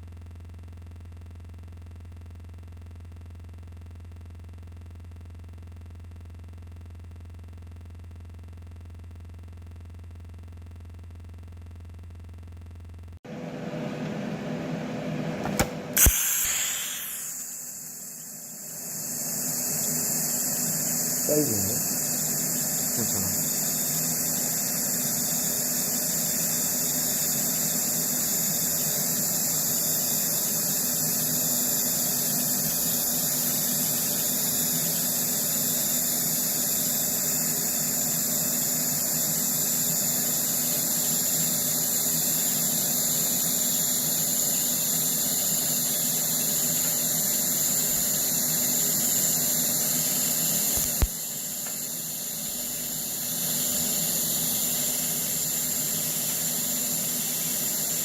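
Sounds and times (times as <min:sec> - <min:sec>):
sharp click: 0:15.4 - 0:18.3, 0:50.8 - 0:51.8
welding arc hissing and buzzing: 0:15.4 - 0:58.0.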